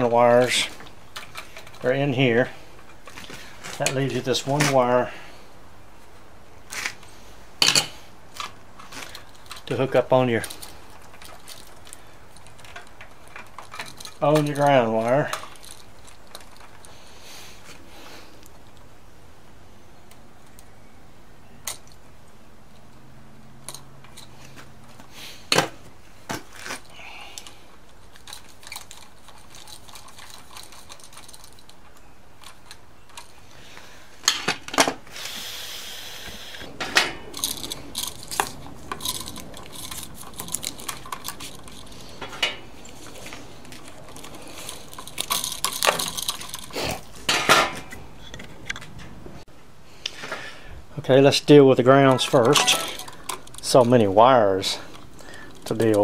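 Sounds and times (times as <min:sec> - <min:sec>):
metal wires and tools clinking: 0:00.0 - 0:05.1, 0:06.7 - 0:17.8, 0:22.7 - 0:35.0, 0:36.4 - 0:49.2, 0:51.3 - 0:56.0
scraping rustle: 0:24.0 - 0:49.4.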